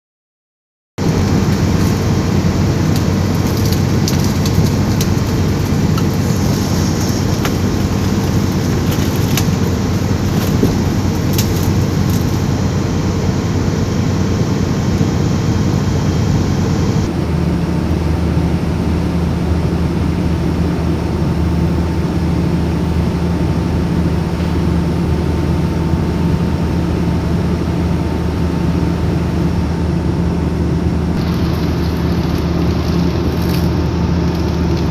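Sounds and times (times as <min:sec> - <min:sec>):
bulldozer diesel engine under load: 0:01.0 - 0:17.1, 0:29.8 - 0:34.9.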